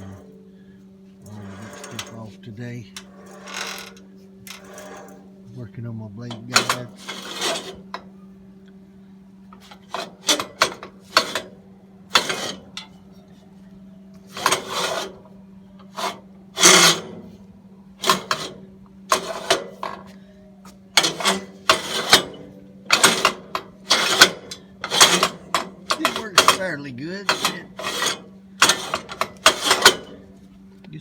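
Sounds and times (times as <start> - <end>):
steady low hum: 0.0 - 31.0
metal scrapes and clunks: 1.2 - 5.3, 6.2 - 8.1, 9.5 - 13.1, 14.3 - 17.4, 18.0 - 20.2, 20.9 - 30.5.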